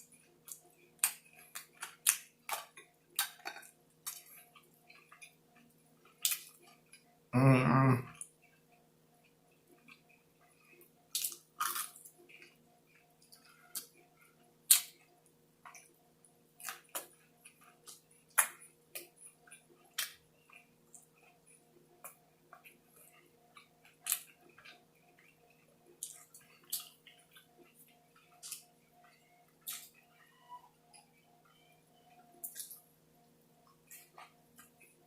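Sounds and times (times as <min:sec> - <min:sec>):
faint steady hum: 0:00.0 - 0:35.0
mouth clicks and chewing smacks: 0:00.4 - 0:05.4, 0:16.6 - 0:30.0, 0:32.4 - 0:32.8.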